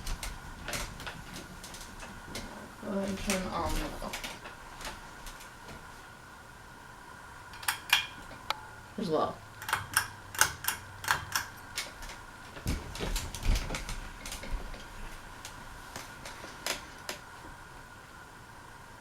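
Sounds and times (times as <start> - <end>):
ceiling fan humming: 0.0 - 19.0
sharp clicks and ticks: 9.6 - 12.2.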